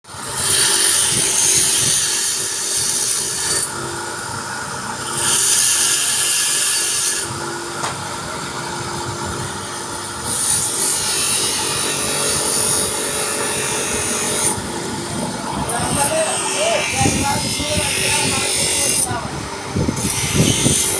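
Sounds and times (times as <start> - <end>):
tool cutting into material: 5.1 - 7.3, 20.0 - 20.9
power tool motor hum: 9.3 - 20.9.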